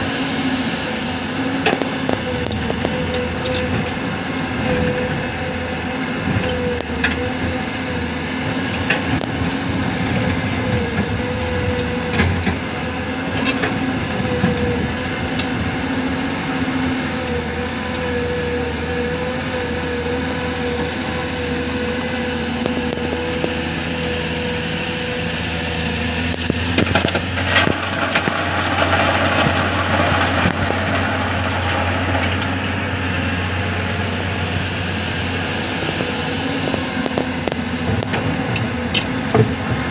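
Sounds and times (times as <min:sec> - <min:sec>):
diesel engine of heavy machinery: 0:00.0 - 0:39.9
rough scraping noise: 0:26.8 - 0:38.3.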